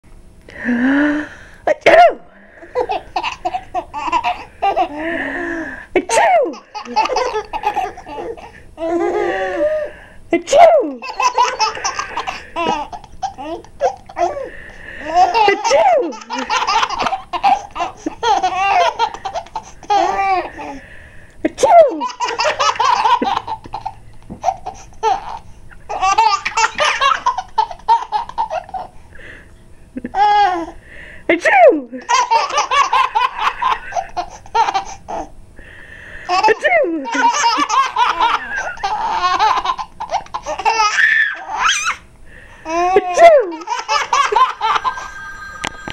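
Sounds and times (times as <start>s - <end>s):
person fake sneezing: 1.7s - 2.3s, 6.0s - 6.6s
babies giggling: 2.5s - 20.8s, 21.5s - 28.9s, 32.0s - 35.3s, 36.2s - 45.2s
children laughing: 2.6s - 9.9s, 10.5s - 20.8s, 21.6s - 28.9s, 32.0s - 35.3s, 36.2s - 45.3s.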